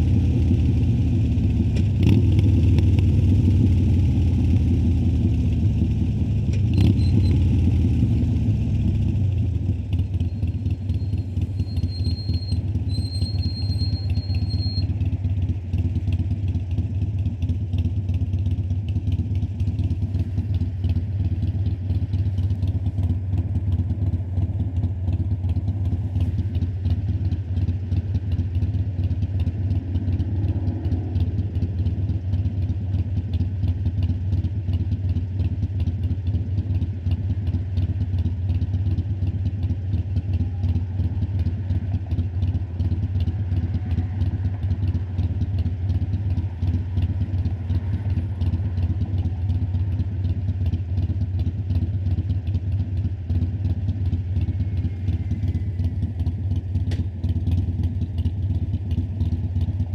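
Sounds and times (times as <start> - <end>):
motorcycle engine running: 0.0 - 59.9.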